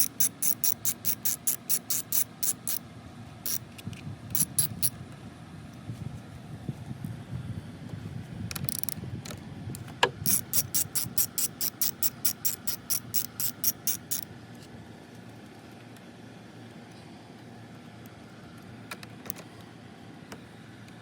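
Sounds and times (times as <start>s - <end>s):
ratchet wrench clicking: 0.0s - 2.8s, 3.5s - 5.0s, 8.5s - 9.0s, 10.0s - 14.3s.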